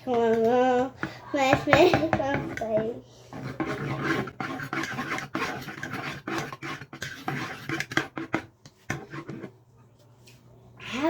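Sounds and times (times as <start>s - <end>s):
utensil scraping against bowl: 0.1s - 9.6s.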